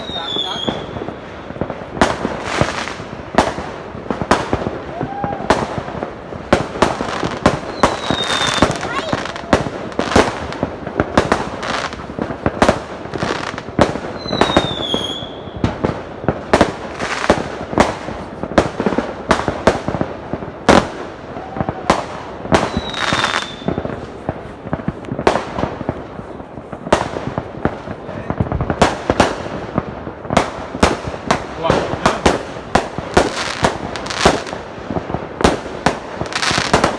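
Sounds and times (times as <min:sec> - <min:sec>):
firework bangs: 0:00.0 - 0:36.9
firework crackle: 0:00.0 - 0:36.9
falling firework whistle: 0:04.7 - 0:05.9, 0:07.6 - 0:09.6, 0:14.1 - 0:15.8, 0:21.3 - 0:24.0.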